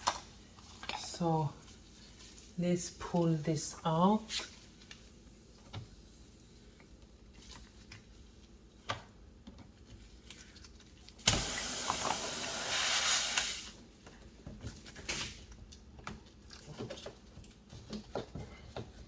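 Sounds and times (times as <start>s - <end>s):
air hissing out of tire: 11.3s - 13.8s.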